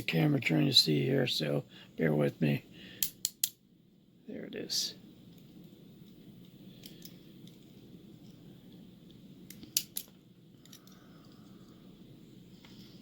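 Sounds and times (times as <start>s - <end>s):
small metal lock parts clicking: 9.5s - 11.0s.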